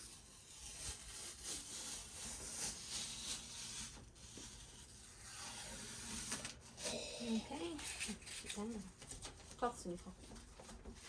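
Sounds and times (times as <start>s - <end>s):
adhesive tape peeling: 0.0s - 7.0s.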